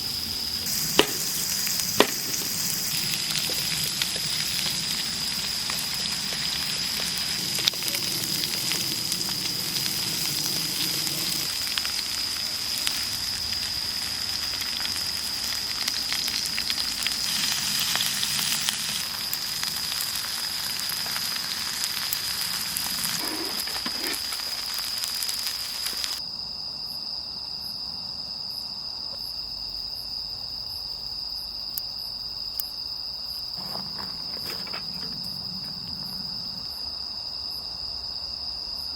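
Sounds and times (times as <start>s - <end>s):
food sizzling in a pan: 0.0s - 26.2s
crickets chirping: 0.0s - 38.9s.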